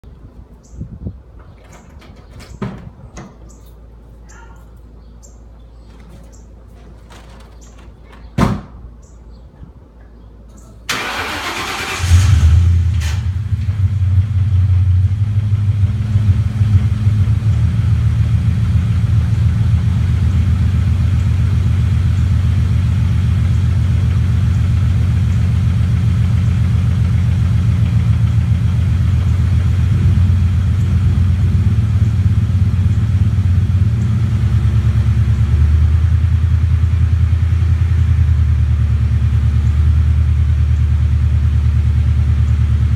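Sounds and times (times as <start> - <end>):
starter motor cranking: 10.9 - 13.3
car engine idling with misfire: 10.9 - 42.9.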